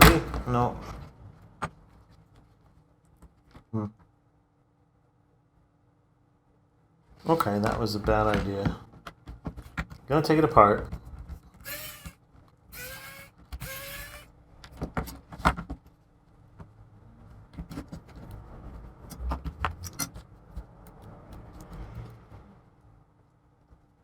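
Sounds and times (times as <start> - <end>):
scraping squeaks: 11.6 - 14.3
small parts rattling: 11.6 - 14.3.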